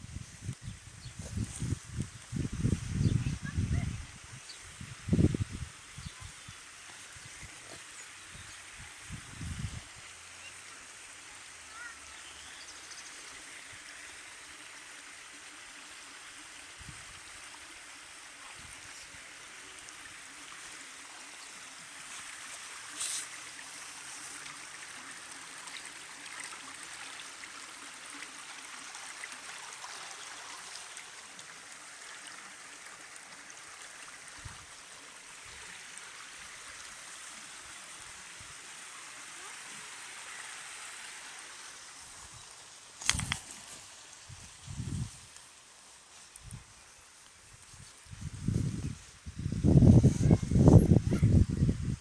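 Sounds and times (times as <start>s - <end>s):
sharp click: 43.0s - 43.5s.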